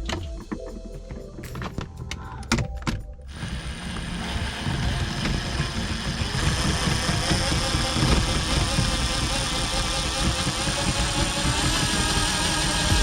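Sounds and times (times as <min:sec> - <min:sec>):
car engine running: 0:03.3 - 0:13.0.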